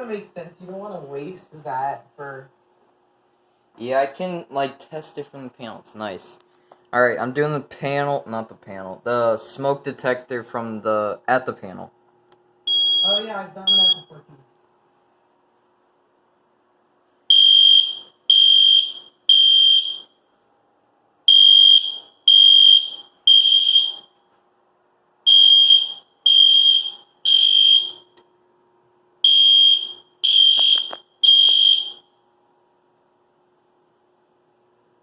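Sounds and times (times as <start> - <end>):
fire alarm beeping: 12.7 - 14.1, 17.3 - 20.3, 21.3 - 24.3, 25.2 - 28.2, 29.2 - 32.2.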